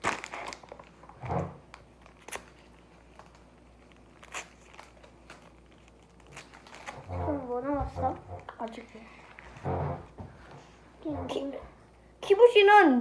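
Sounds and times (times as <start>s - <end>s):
plastic packaging crackling: 0.0s - 9.9s.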